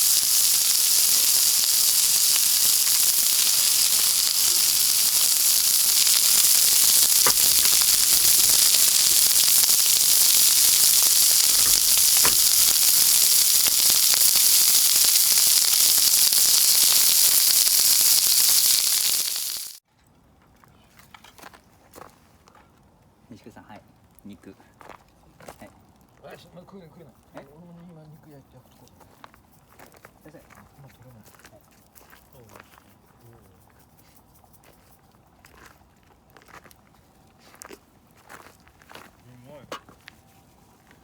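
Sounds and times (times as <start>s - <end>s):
faint pops: 0.0s - 19.7s
food sizzling on a grill: 0.0s - 19.8s.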